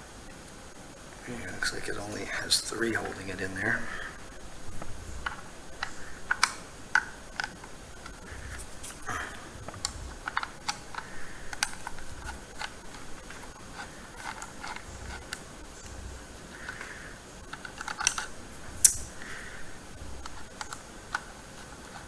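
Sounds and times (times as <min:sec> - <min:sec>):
screwdriver clicking and ticking: 0:05.2 - 0:09.0, 0:09.6 - 0:15.9, 0:17.5 - 0:19.2, 0:20.2 - 0:21.3.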